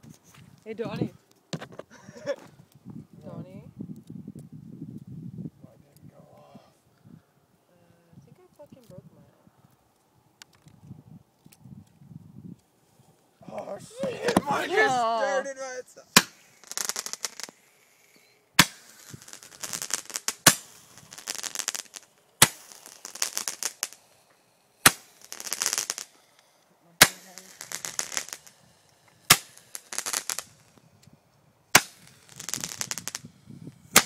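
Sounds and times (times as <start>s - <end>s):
firework crackling hiss: 16.0s - 34.0s
firework bangs: 16.1s - 24.2s, 24.8s - 26.4s, 27.0s - 30.8s, 31.7s - 34.0s.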